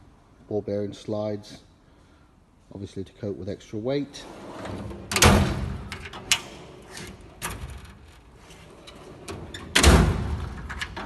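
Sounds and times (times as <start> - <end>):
tool chest drawers sliding: 4.2 - 11.0.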